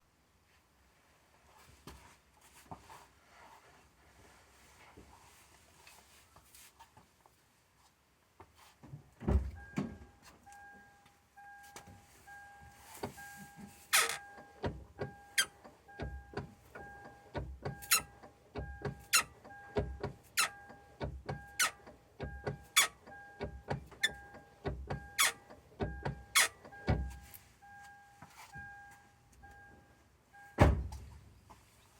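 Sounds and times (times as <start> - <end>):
clutch pedal squeaking: 13.9 - 27.2.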